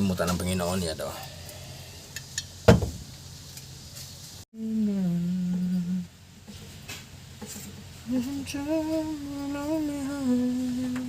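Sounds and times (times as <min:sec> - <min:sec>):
person humming: 0:04.6 - 0:06.2, 0:08.1 - 0:11.0.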